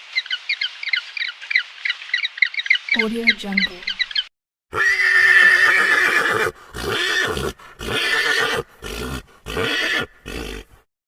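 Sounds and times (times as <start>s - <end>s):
animal giving harsh calls: 4.7s - 10.9s.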